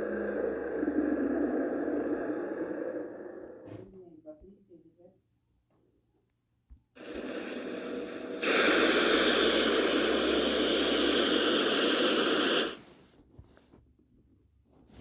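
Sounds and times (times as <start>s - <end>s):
static-like hiss: 7.0s - 13.1s.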